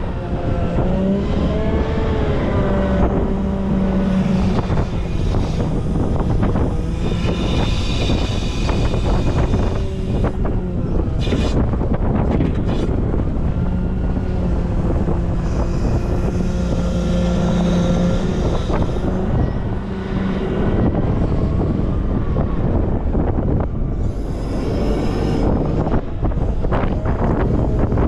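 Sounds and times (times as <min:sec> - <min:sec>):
diesel engine working: 0:00.0 - 0:28.0.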